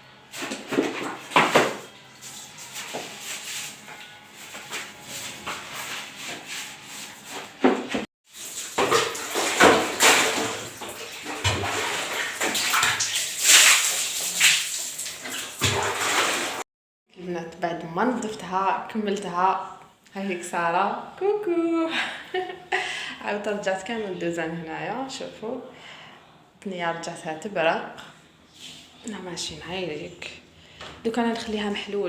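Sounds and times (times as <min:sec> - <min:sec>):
water running and splashing: 0:08.3 - 0:16.6.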